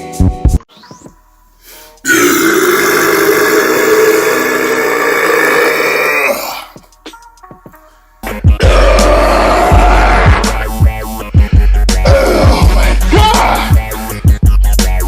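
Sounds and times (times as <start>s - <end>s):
man burping: 2.0s - 6.8s, 8.6s - 10.6s.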